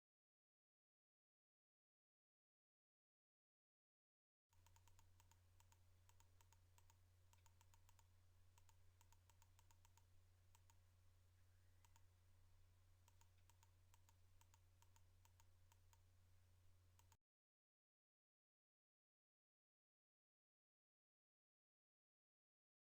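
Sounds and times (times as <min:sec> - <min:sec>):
faint clicks: 0:04.6 - 0:12.2, 0:13.0 - 0:16.1, 0:16.9 - 0:17.2
faint low hum: 0:04.6 - 0:17.2.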